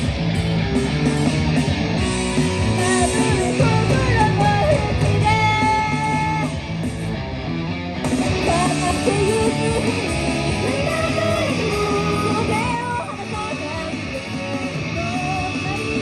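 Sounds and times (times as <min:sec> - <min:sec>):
electric guitar lead: 0:00.0 - 0:16.0
live rock band playing: 0:00.0 - 0:16.0.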